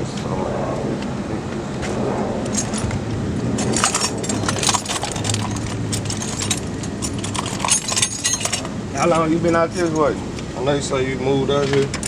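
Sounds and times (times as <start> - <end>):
steady low hum: 0.0 - 12.0
small metallic clicks and clinks: 3.6 - 8.7.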